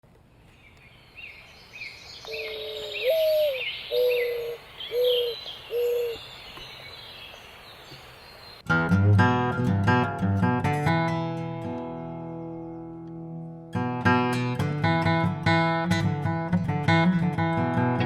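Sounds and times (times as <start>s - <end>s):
songbird chirping: 0.1s - 8.7s
dove cooing: 2.2s - 6.2s.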